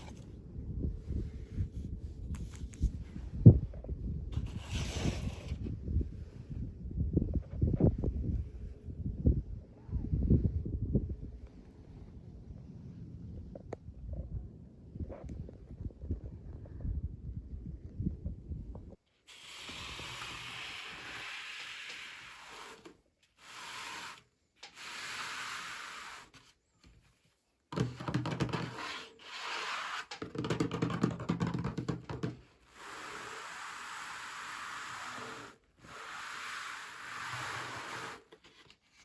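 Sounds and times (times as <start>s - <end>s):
packaging rubbing and scraping: 28.0s - 39.0s.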